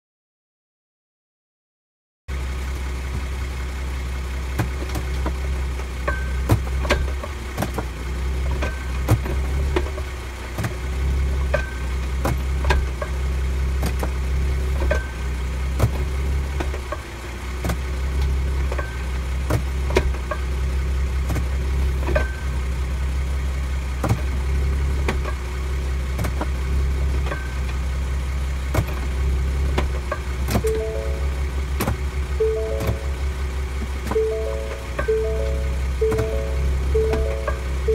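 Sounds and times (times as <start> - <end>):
car engine idling: 2.3 - 37.9
brief high tone: 30.6 - 37.9.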